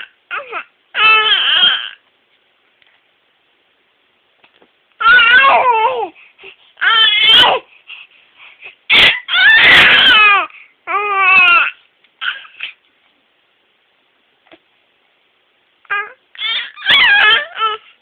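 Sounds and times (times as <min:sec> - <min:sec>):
baby fake-coughing: 0:08.9 - 0:12.8.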